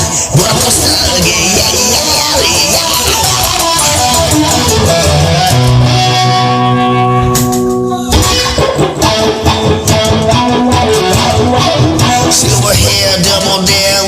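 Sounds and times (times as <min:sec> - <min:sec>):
rock guitar playing: 0:00.0 - 0:14.0
guitar chord ringing: 0:01.6 - 0:12.7.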